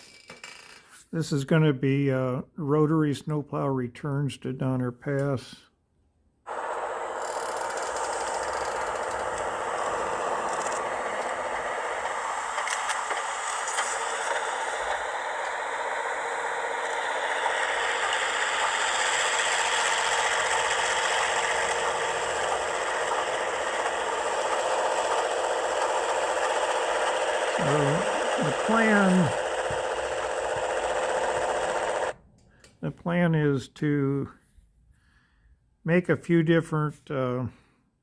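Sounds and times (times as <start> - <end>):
mechanical rattle from small speaker: 0.0 - 1.0, 7.2 - 9.5.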